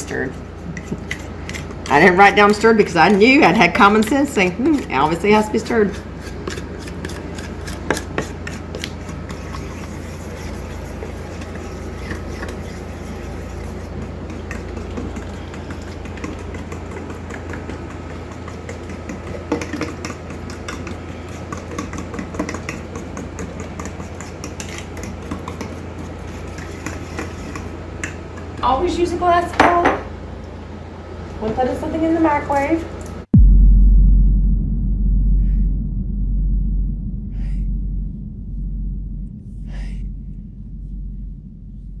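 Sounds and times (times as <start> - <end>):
spoon scraping a bowl: 0.0 - 28.6
steady low hum: 0.0 - 42.0.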